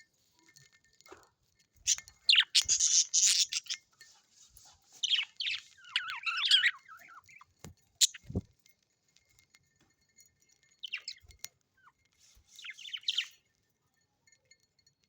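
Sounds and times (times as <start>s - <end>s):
parrots squawking and chattering: 1.8s - 3.9s, 4.9s - 8.4s, 10.8s - 11.2s, 11.8s - 13.4s.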